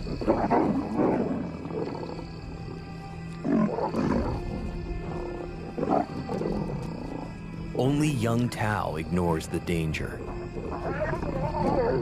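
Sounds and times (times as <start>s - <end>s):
lions snarling and growling: 0.0s - 2.8s, 3.4s - 7.4s, 10.4s - 12.0s
background music: 0.0s - 12.0s.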